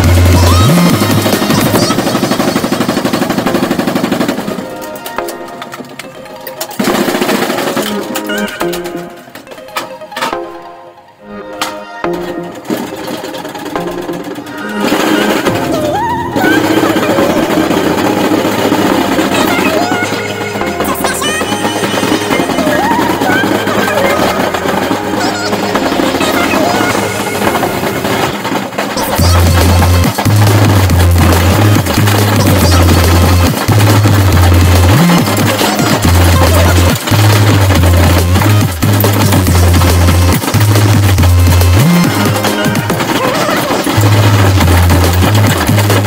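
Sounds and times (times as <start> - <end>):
loud music with heavy bass: 0.0 - 3.8, 29.0 - 43.2, 43.9 - 46.0
sharp percussive hits: 12.1 - 46.0.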